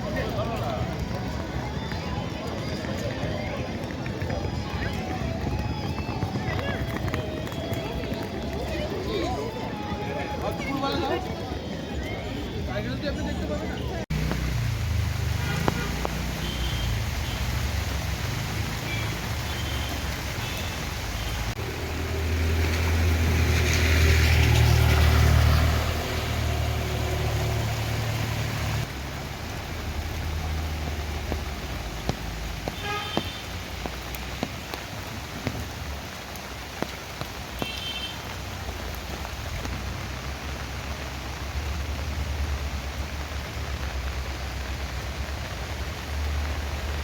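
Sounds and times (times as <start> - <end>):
steady rain falling: 0.0 - 47.0
water dripping: 14.1 - 47.0
vehicle engine rumbling past: 21.5 - 32.6.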